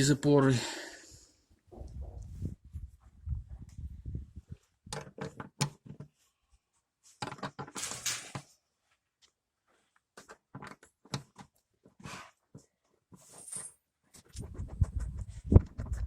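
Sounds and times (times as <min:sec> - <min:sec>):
scraping rustle: 0:07.7 - 0:08.5.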